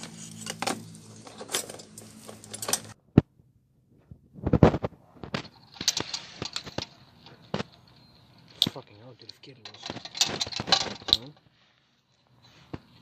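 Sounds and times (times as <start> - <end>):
metal tools clinking: 0.2 - 3.0, 5.4 - 11.4.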